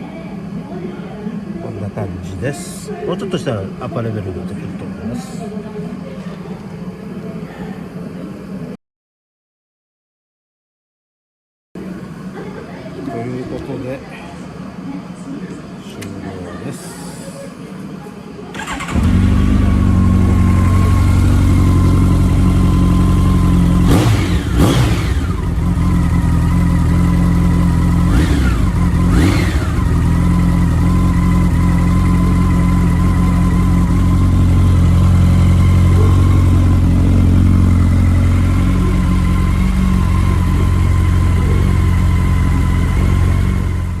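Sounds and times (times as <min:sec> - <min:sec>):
motorcycle engine revving: 0:18.6 - 0:44.0
motorcycle engine running: 0:18.6 - 0:44.0.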